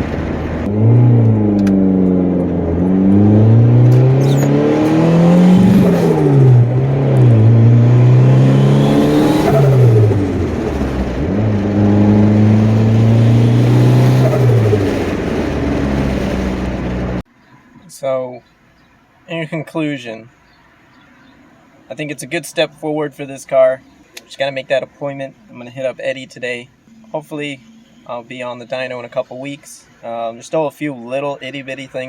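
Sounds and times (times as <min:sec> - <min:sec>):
car engine accelerating: 0:00.0 - 0:17.2.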